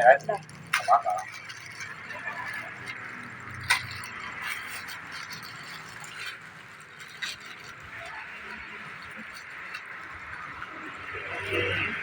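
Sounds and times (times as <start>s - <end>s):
packaging rustling and clicking: 0.0s - 10.3s.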